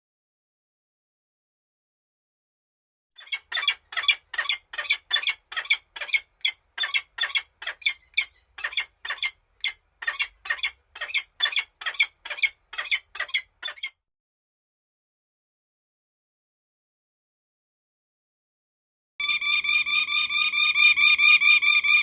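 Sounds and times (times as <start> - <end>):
bird squawking: 3.2 - 14.0.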